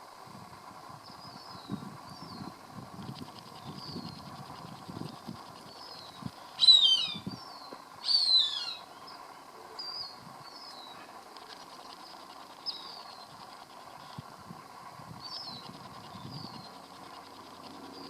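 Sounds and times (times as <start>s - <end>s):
faint chirps: 3.3s - 4.7s, 5.5s - 14.3s, 15.2s - 18.0s
hawk calling: 6.6s - 9.2s.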